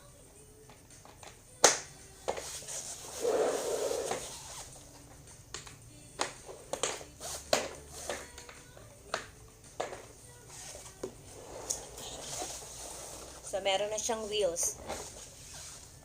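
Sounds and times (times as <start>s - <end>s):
sharp plastic snap: 1.6s - 1.9s
rubbing scrape: 2.4s - 4.8s, 10.5s - 13.6s, 14.2s - 16.0s.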